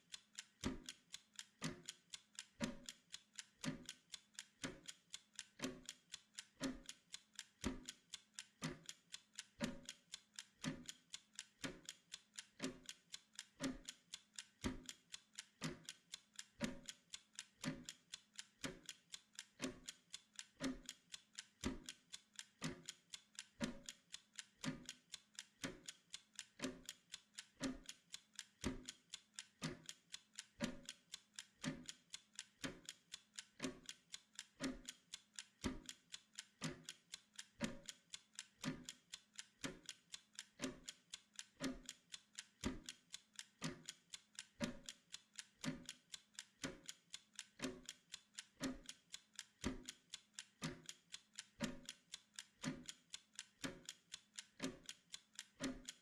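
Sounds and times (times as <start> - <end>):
mechanical timer ticking: 0.0 - 56.0.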